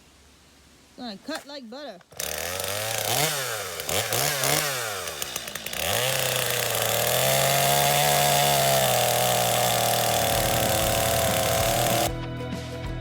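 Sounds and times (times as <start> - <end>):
chainsaw revving at high revs: 2.1 - 12.1.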